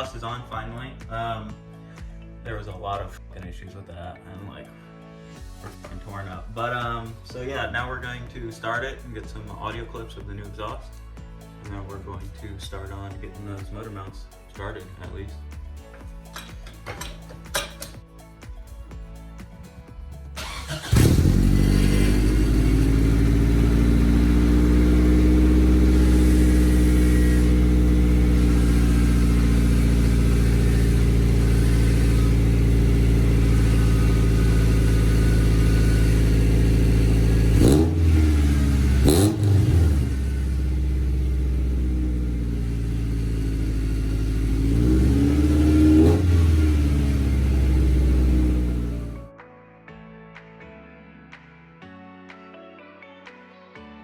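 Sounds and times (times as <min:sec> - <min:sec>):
car engine idling and revving: 0:20.4 - 0:49.3.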